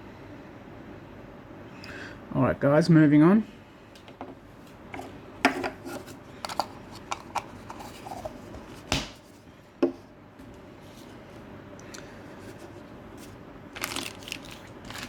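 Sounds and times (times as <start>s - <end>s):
plastic crack: 13.8s - 15.0s.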